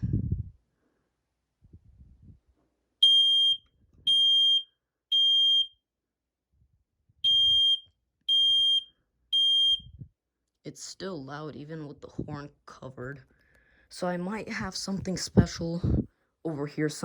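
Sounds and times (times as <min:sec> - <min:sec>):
smoke alarm beeping: 0:03.0 - 0:05.8, 0:07.2 - 0:10.0.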